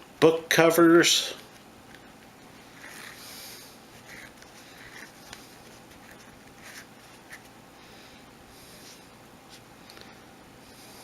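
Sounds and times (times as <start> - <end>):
cord rustling while tying knots: 1.4 - 7.6.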